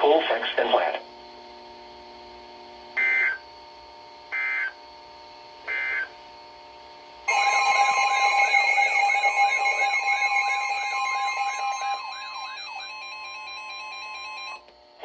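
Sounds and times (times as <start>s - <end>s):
steady electronic hum: 0.0s - 15.0s
data tone bursts: 5.7s - 6.1s, 7.3s - 14.6s
two-tone alert alarm: 5.7s - 6.1s, 7.3s - 14.7s.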